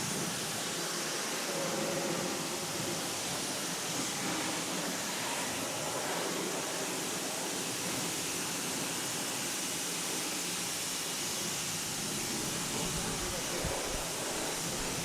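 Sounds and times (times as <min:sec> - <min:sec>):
pressure washer spraying water: 0:11.8 - 0:15.0.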